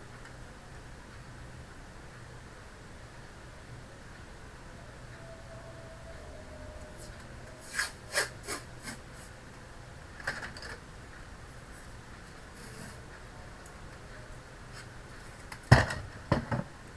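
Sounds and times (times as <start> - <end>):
rasping scrapes: 7.0 - 9.4.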